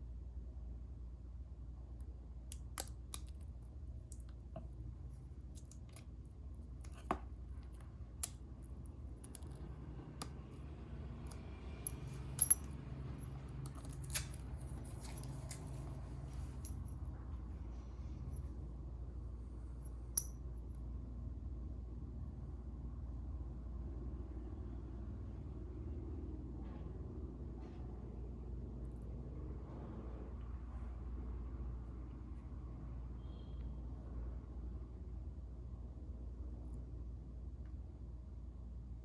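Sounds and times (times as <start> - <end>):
clicks and clinks of watch parts: 2.5 - 10.6, 11.2 - 17.0, 20.1 - 20.4.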